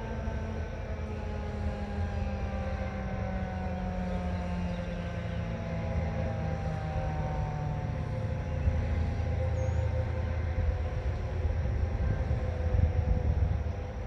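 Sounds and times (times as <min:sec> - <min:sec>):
distant warning siren winding down: 0:00.0 - 0:14.0
wind rumble: 0:06.7 - 0:14.0.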